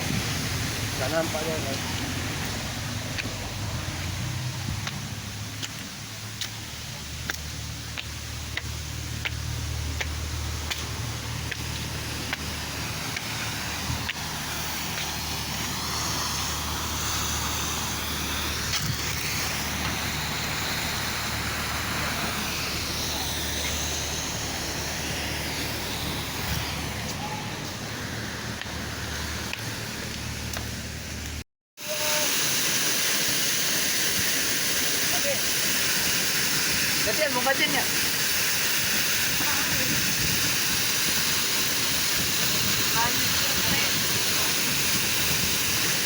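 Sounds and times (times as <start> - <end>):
vehicle engine humming: 0.0 - 31.4.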